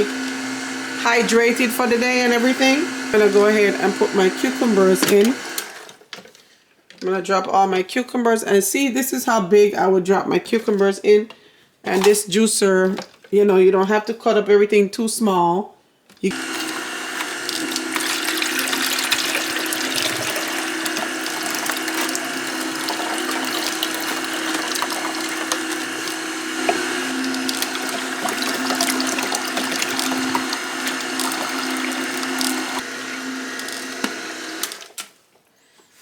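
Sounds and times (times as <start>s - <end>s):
cucumbers being ground: 0.0s - 5.9s, 16.3s - 35.0s
juicer motor hum: 0.0s - 6.0s, 16.3s - 35.0s.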